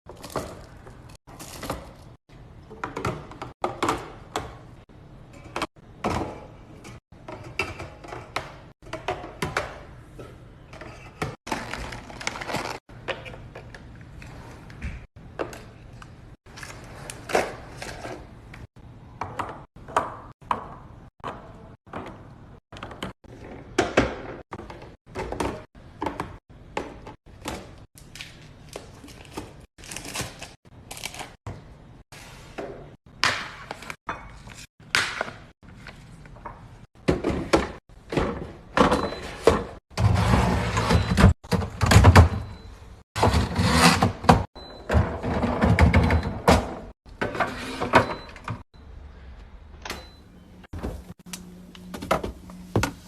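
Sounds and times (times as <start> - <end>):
kitchen containers clattering: 5.3 - 13.8, 43.2 - 48.6.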